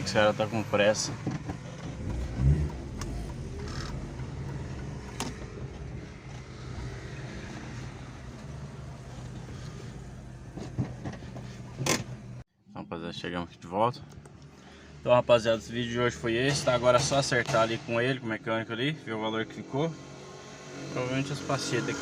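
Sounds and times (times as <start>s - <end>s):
car engine and road noise inside cabin: 0.0s - 12.5s.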